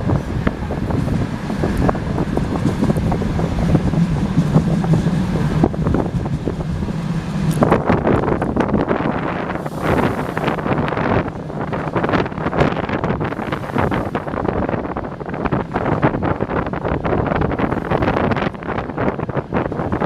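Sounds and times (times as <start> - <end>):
low hum: 0.0 - 14.5
train wheels on rails: 0.0 - 20.0
wind rushing on microphone: 0.0 - 20.0.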